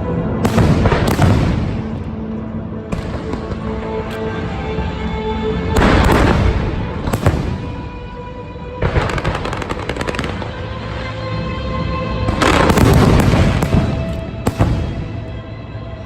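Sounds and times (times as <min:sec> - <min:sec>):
fireworks bangs: 0:00.4 - 0:02.0, 0:05.8 - 0:08.1, 0:08.8 - 0:10.8, 0:12.3 - 0:15.4
fireworks crackling pops: 0:08.8 - 0:10.8, 0:12.3 - 0:15.3.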